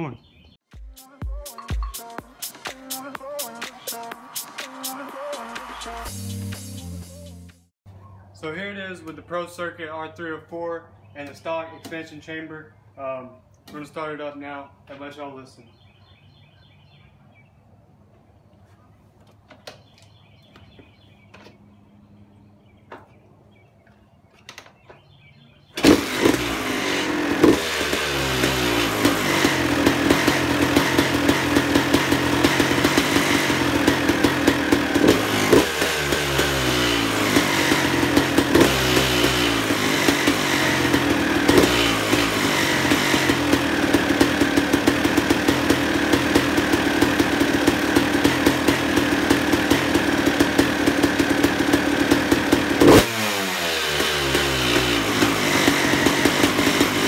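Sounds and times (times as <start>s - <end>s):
two-stroke dirt bike revving: 25.8s - 57.0s.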